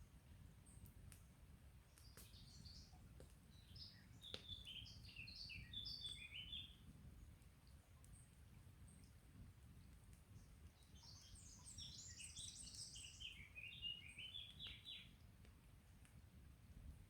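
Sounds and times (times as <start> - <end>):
songbird chirping: 3.6 - 6.8, 10.8 - 15.2.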